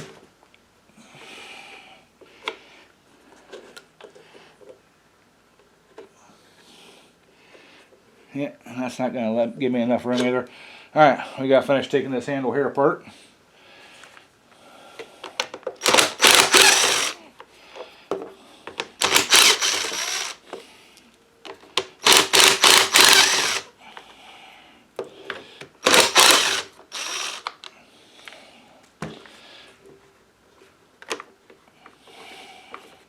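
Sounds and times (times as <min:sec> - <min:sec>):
impact driver rapid clicking: 0:15.8 - 0:17.2, 0:18.9 - 0:20.4, 0:21.8 - 0:23.7, 0:25.8 - 0:27.6.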